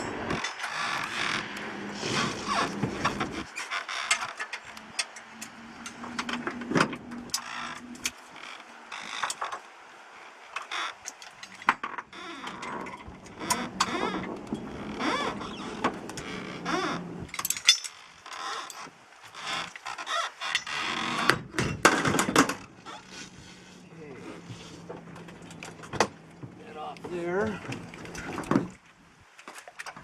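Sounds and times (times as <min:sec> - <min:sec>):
metal fittings clicking and clanking: 0:17.3 - 0:18.0.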